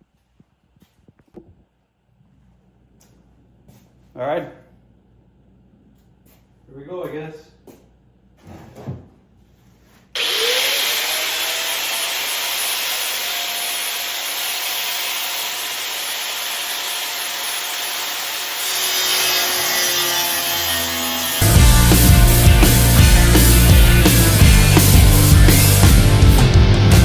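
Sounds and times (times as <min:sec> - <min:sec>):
angle grinder cutting sheet steel: 0:10.2 - 0:25.9
loud rock music: 0:21.4 - 0:27.0.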